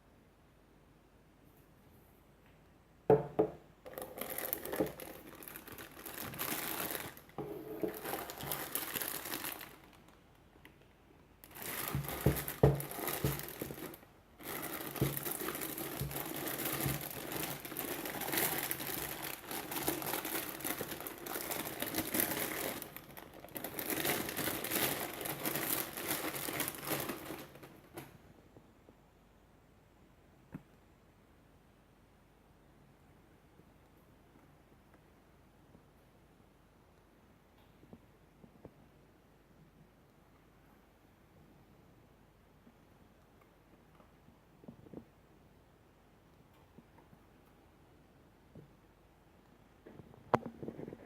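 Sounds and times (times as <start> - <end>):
packaging crinkling: 3.9 - 10.4, 11.4 - 28.1.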